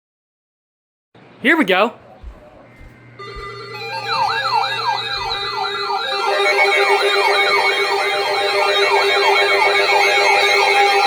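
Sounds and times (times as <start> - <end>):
electronic siren alert tone: 3.2 - 11.0.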